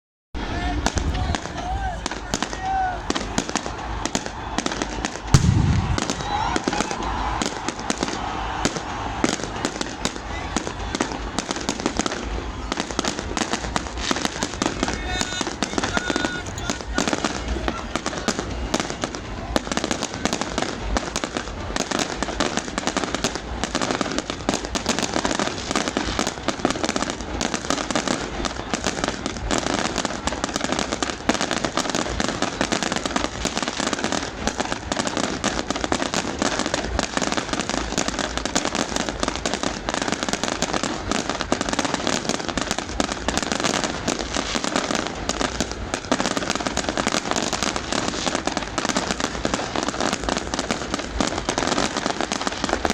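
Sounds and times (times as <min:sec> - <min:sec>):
fireworks bangs and crackles: 0:00.4 - 0:52.9.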